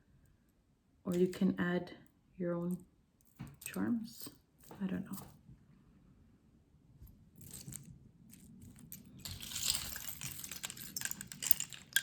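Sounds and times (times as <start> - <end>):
jewelry clinking and rattling: 7.3 - 12.0.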